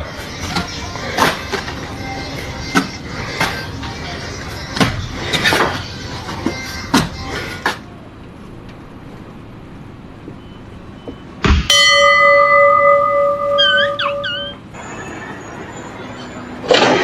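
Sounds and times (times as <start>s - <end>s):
sharp knocks: 11.1s - 14.5s
heavy thud: 11.4s - 14.2s
steady horn-like tone: 11.7s - 15.7s.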